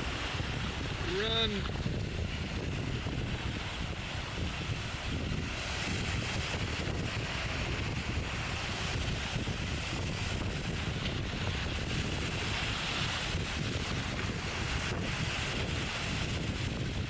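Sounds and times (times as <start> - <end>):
surf washing up beach: 0.0 - 17.0
wind buffeting microphone: 0.0 - 17.0.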